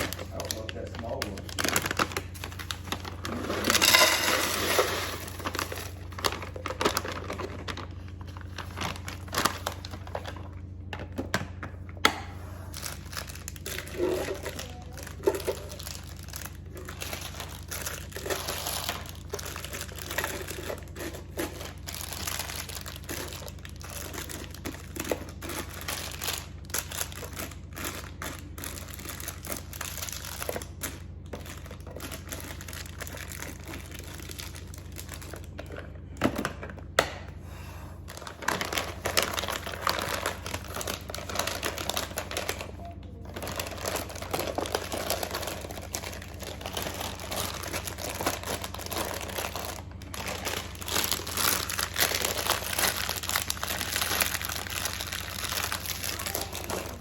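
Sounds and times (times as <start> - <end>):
crinkling and rustling: 0.0 - 12.0, 38.0 - 57.0
low steady hum: 0.0 - 57.0.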